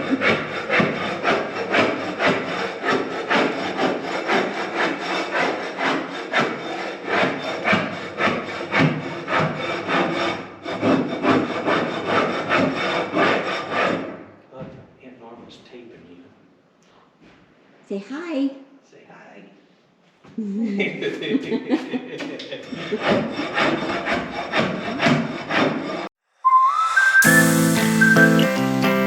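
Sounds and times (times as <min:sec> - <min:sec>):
rasping strokes on wood: 0:00.0 - 0:14.3, 0:22.3 - 0:26.1.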